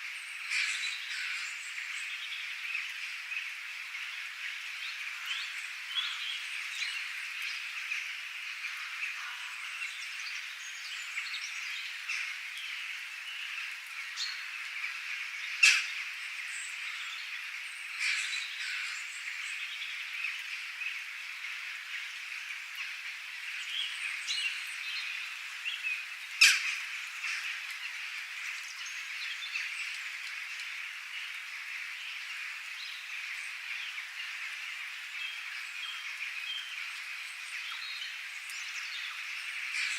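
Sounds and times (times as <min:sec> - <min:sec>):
frogs chorus: 0:00.2 - 0:39.9.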